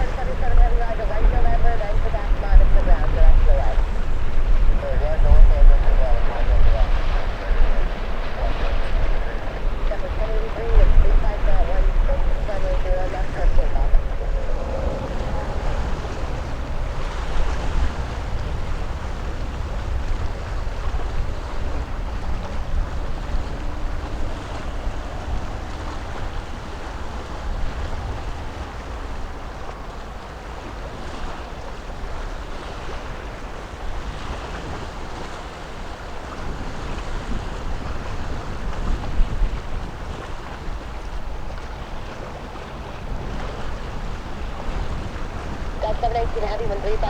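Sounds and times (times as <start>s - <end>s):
jet airliner engines roaring: 0.0s - 3.9s, 4.6s - 30.4s, 45.3s - 47.0s
wind buffeting microphone: 0.0s - 47.0s.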